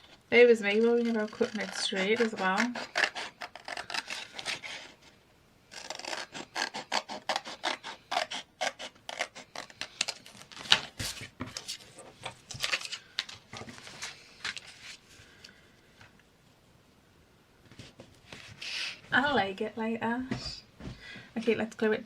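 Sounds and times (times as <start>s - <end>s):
scissors cutting paper: 0.7s - 4.9s, 5.7s - 11.2s.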